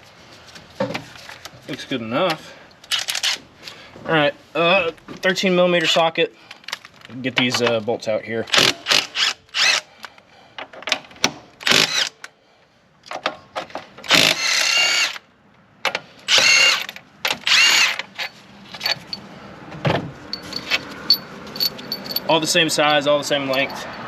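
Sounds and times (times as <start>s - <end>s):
power tool whirring: 8.6s - 9.9s, 11.6s - 12.1s, 14.1s - 15.2s, 16.3s - 18.3s.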